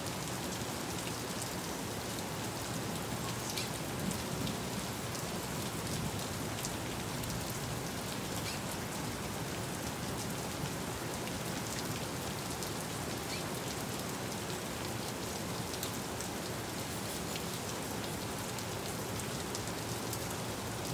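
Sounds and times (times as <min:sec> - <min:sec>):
heavy rain on hard surfaces: 0:00.0 - 0:20.9
raindrops ticking close by: 0:00.1 - 0:20.9.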